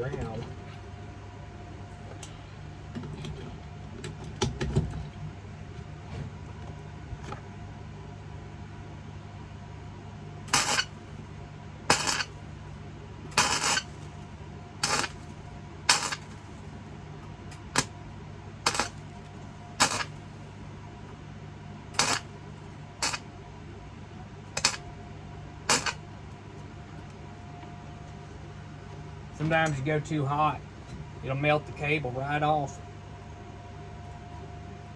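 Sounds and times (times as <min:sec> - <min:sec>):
low machine hum: 0:00.0 - 0:34.9
arc welder crackling bursts: 0:10.5 - 0:11.1, 0:11.9 - 0:12.4, 0:13.3 - 0:14.1, 0:14.8 - 0:16.6, 0:17.5 - 0:18.0, 0:18.6 - 0:19.2, 0:19.8 - 0:20.4, 0:21.9 - 0:22.3, 0:23.0 - 0:23.3, 0:24.5 - 0:24.9, 0:25.6 - 0:26.0.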